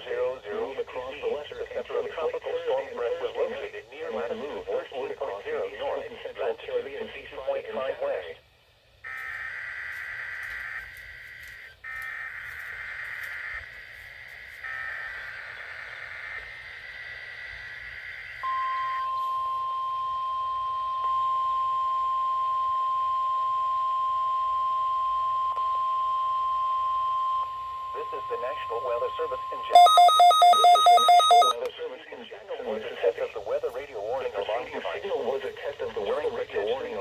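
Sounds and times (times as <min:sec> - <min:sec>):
steady warning alarm tone: 0:09.1 - 0:16.6, 0:18.4 - 0:31.7.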